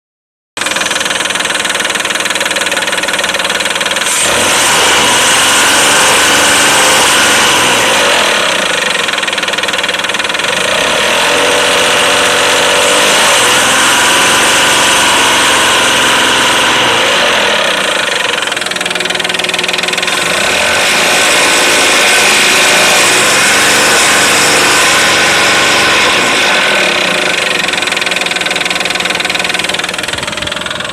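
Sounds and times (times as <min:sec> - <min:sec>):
knocking engine revving: 0:00.6 - 0:30.9.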